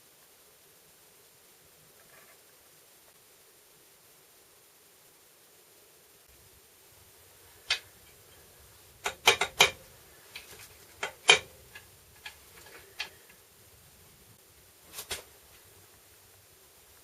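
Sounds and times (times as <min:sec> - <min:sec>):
metal parts clicking and knocking: 0:07.6 - 0:13.4.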